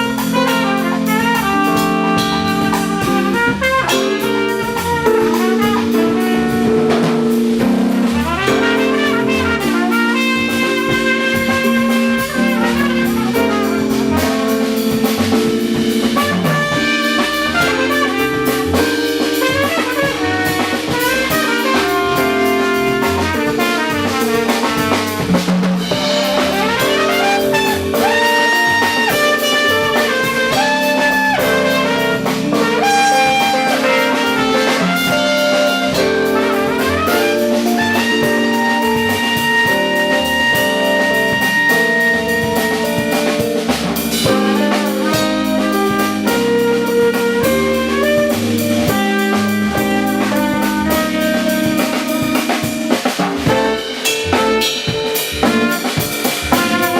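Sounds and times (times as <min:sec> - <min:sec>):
drum kit: 0:00.0 - 0:56.9
keyboard with bass: 0:00.0 - 0:56.9
trumpet soloing: 0:00.0 - 0:56.9
guitar: 0:52.6 - 0:56.9.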